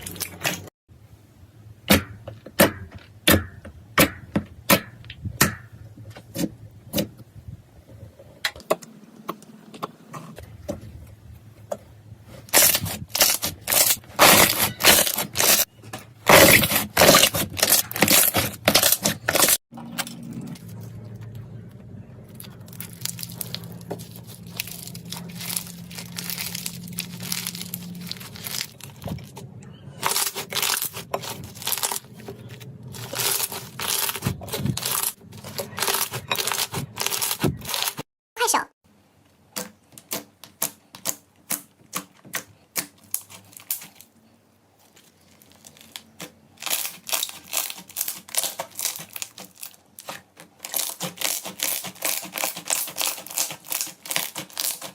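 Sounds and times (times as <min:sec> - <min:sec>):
crunchy slime crackling: 0:12.4 - 0:19.6, 0:20.4 - 0:29.4, 0:30.0 - 0:38.0, 0:40.0 - 0:54.9.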